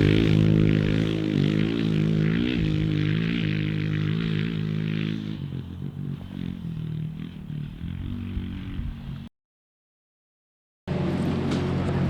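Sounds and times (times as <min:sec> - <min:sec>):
motorbike engine revving: 0:00.0 - 0:09.3.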